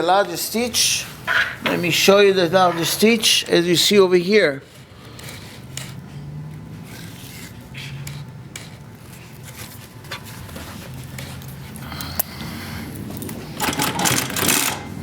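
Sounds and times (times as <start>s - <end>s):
rustles: 4.6s - 12.0s.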